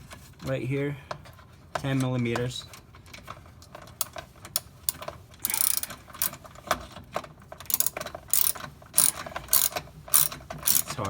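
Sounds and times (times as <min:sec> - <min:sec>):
socket ratchet clicking: 0:04.0 - 0:06.4, 0:07.7 - 0:10.9.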